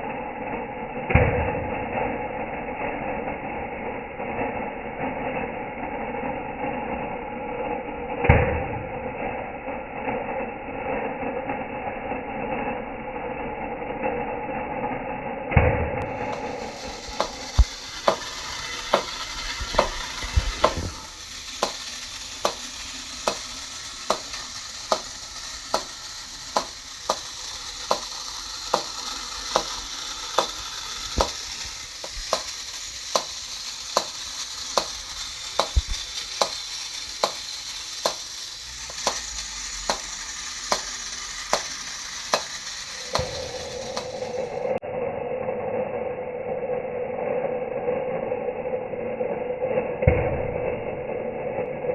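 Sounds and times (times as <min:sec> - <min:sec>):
sharp regular clicks: 0:16.0 - 0:44.8
toy balls rattling in popper: 0:16.0 - 0:44.8.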